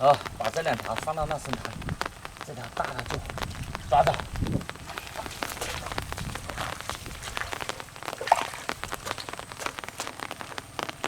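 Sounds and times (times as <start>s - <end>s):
water drops splashing in shallow water: 0.4s - 11.0s.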